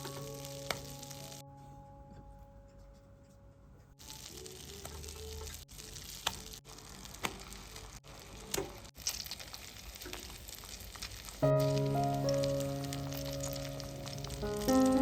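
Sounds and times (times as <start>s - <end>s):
food sizzling in a frying pan: 4.0s - 15.0s.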